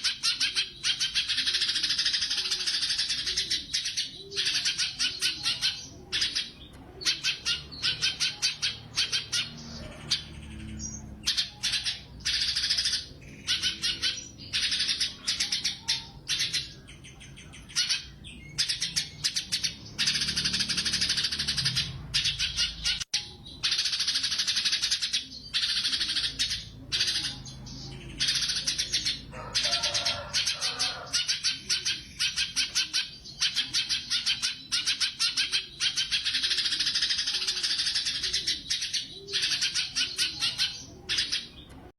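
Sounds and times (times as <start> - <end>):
bird singing trilled phrases: 0.0 - 41.9.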